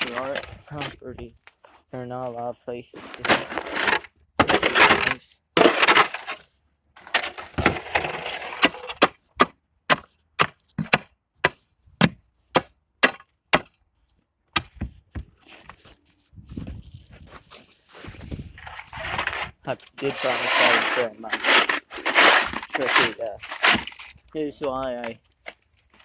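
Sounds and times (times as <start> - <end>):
hand tool chopping ice: 0.0 - 0.5, 3.2 - 6.4, 7.0 - 13.8, 20.0 - 24.1.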